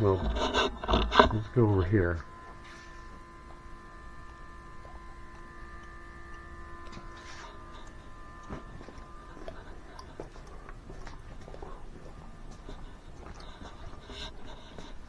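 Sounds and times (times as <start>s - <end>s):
footsteps: 0.0s - 1.6s
small electric motor humming: 0.0s - 15.0s.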